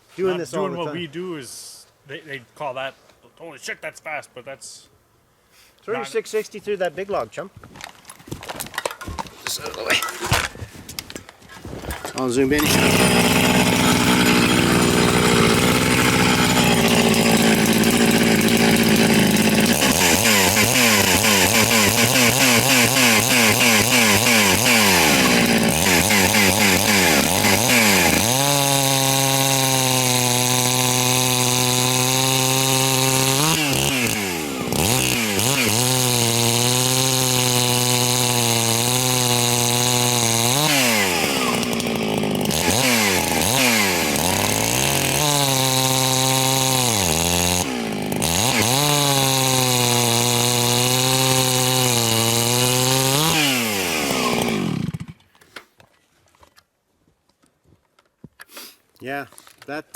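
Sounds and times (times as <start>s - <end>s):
chainsaw cutting log: 12.1s - 55.7s.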